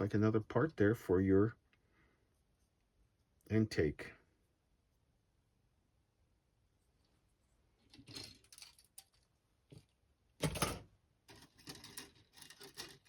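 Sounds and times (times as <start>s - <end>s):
plastic parts rattling: 7.8s - 13.0s.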